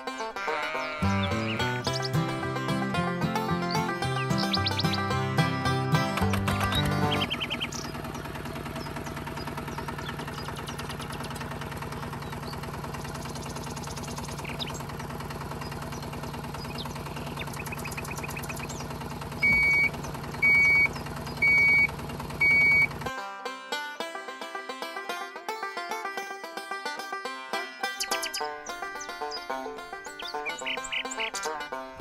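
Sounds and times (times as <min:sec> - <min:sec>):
short electronic beeps: 0:19.4 - 0:22.9.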